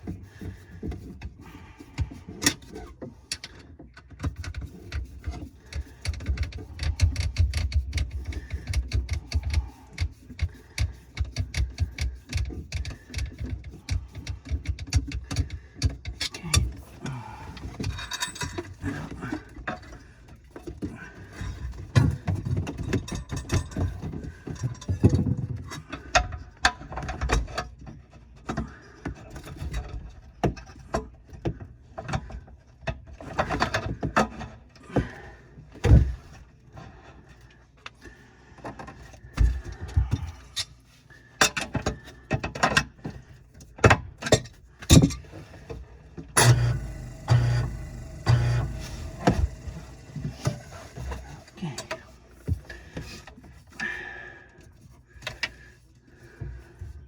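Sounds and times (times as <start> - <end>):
hand tools clicking and rattling: 2.0 - 19.4, 46.4 - 52.2.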